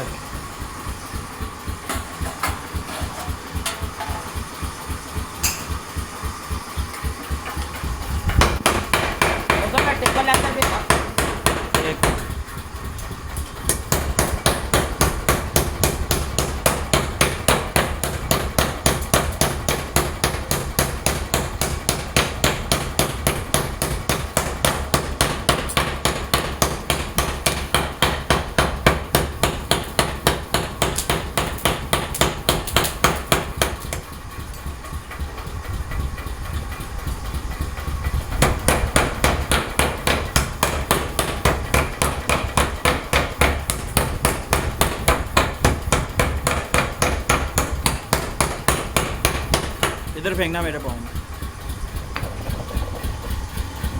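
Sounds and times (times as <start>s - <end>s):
steady low hum: 0.0s - 53.9s
hammer striking iron: 1.8s - 12.4s, 13.0s - 34.7s, 38.4s - 51.4s.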